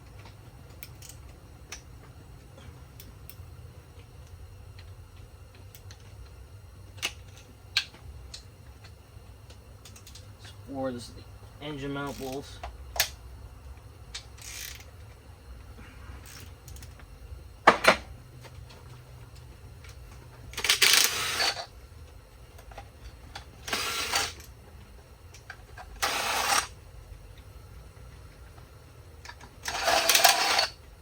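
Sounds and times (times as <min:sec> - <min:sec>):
power wrench spinning: 0:14.3 - 0:15.0, 0:16.2 - 0:17.0, 0:20.5 - 0:21.7, 0:23.6 - 0:24.4, 0:25.8 - 0:26.8, 0:29.3 - 0:30.8.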